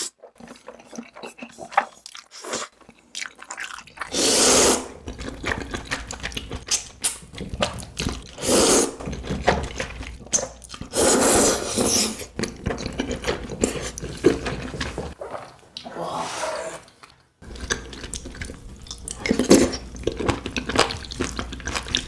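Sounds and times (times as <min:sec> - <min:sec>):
loud eating bursts: 0:03.5 - 0:05.1, 0:08.3 - 0:09.0.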